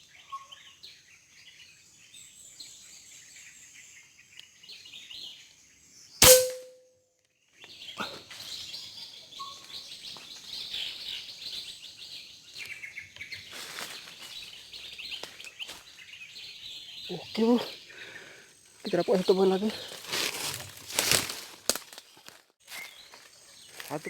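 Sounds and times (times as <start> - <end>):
air rifle shot: 6.2 - 6.7
birds chirping: 7.7 - 20.0.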